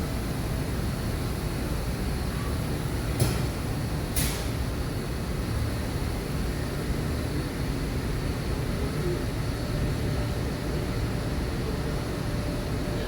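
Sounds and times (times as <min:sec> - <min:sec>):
boat ride background rumble: 0:04.8 - 0:13.0.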